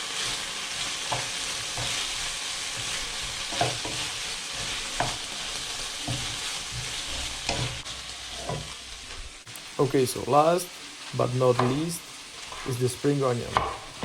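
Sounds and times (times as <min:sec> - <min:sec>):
food sizzling in a frying pan: 0:00.0 - 0:14.0.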